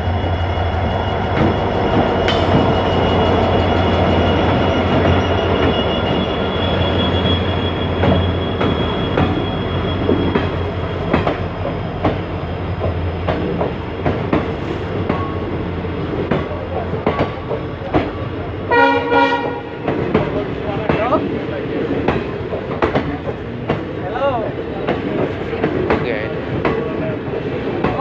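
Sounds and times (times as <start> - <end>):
train coach rumbling: 0.0 - 28.0
high wheel squeal: 0.3 - 14.0
wheels clacking over rail joints: 1.3 - 6.3, 7.1 - 18.5.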